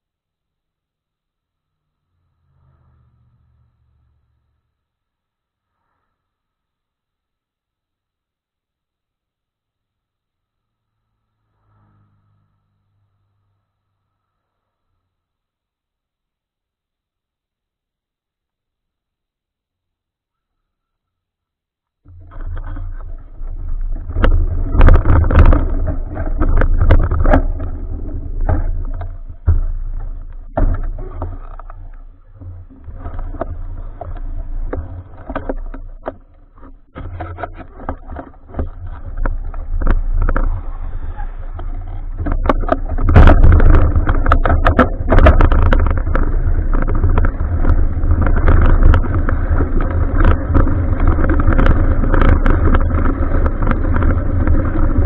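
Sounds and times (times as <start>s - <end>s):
road noise: 1.6s - 4.9s, 10.6s - 15.2s, 22.1s - 55.0s
bicycle knocks and rattles: 22.1s - 55.0s
wind rumble on microphone: 22.1s - 55.0s.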